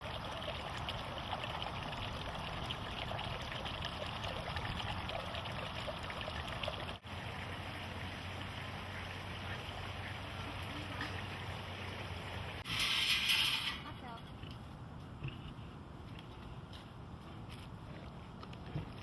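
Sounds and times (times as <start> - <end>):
trickling babbling water: 0.0 - 12.7.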